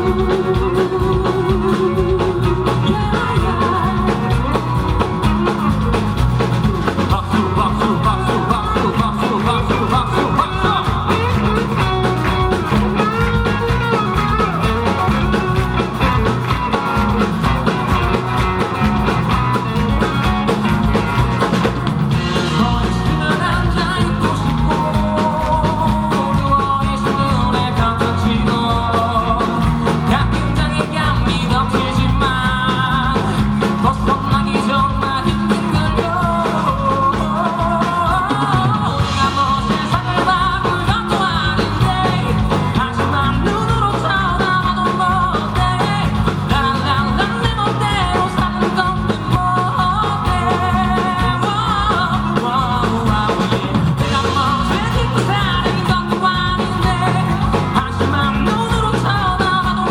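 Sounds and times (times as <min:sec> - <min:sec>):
live pop-rock band music: 0:00.0 - 0:59.9.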